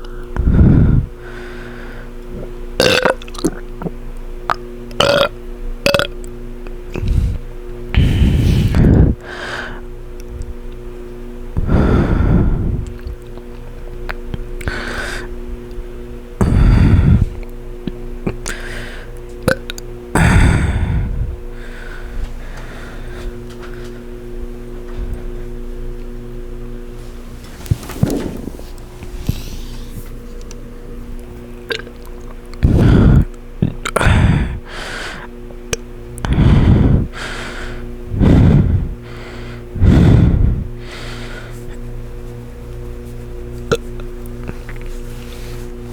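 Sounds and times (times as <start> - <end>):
steady low hum: 0.0 - 45.9
heavy breathing into microphone: 8.0 - 9.8, 11.6 - 13.0, 16.4 - 17.4, 20.2 - 24.1, 27.1 - 30.2, 32.6 - 33.3, 36.3 - 41.8.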